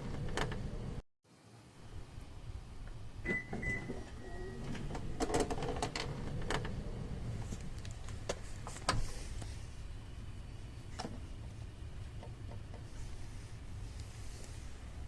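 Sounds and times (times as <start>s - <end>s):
short beep: 3.2s - 4.6s.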